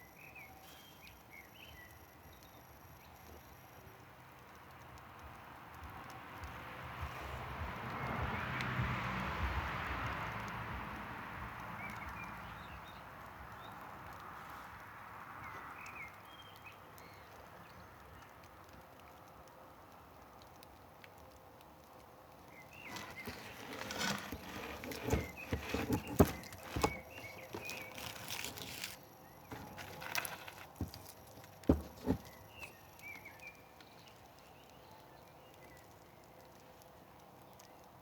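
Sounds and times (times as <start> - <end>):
campfire crackling: 0.2 - 38.0
fire snapping and popping: 15.8 - 38.0.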